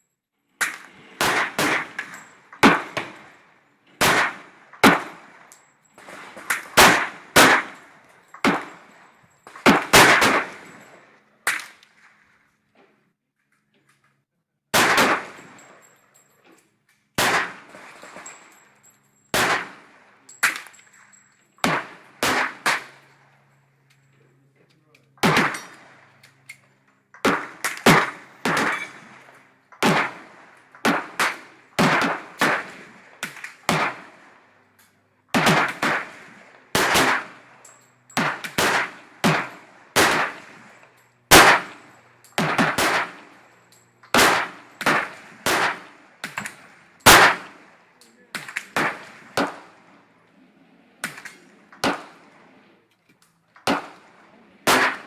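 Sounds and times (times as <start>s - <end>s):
pistol shots with echo: 0.7s - 3.4s, 4.0s - 5.5s, 6.1s - 8.9s, 9.5s - 10.9s, 14.8s - 15.8s, 17.2s - 18.6s, 19.3s - 20.8s, 21.6s - 23.7s, 25.1s - 26.4s, 27.2s - 34.4s, 35.3s - 50.2s, 51.0s - 52.8s, 53.6s - 55.0s.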